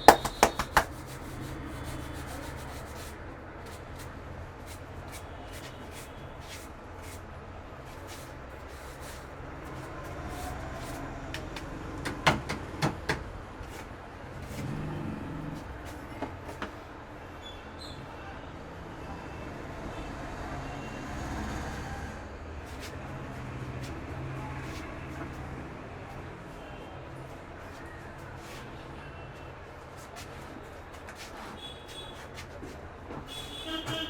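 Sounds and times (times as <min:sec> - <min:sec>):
hands slapping a head: 0:00.0 - 0:01.2, 0:11.3 - 0:13.2.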